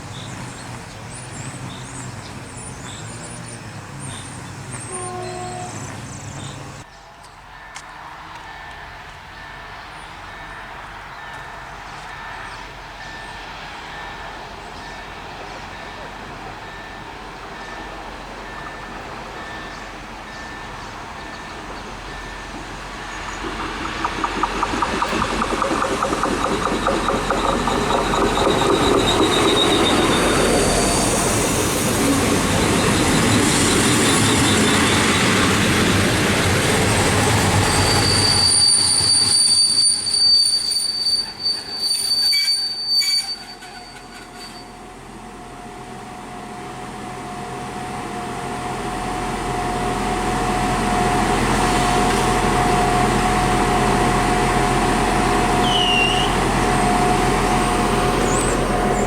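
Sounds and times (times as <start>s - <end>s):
train running on track: 0.0s - 59.0s
wheels clattering over rails: 20.8s - 38.4s
high-pitched wheel squeal: 22.4s - 35.6s, 37.3s - 44.8s, 51.9s - 59.0s.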